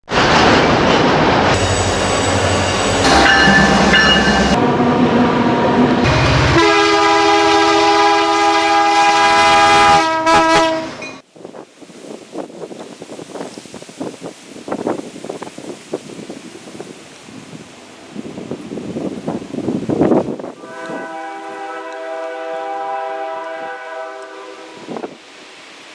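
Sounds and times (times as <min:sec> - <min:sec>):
locomotive air horn blasts: 0:06.1 - 0:11.0, 0:20.6 - 0:25.0
wind noise on microphone: 0:11.3 - 0:21.6, 0:24.7 - 0:25.2.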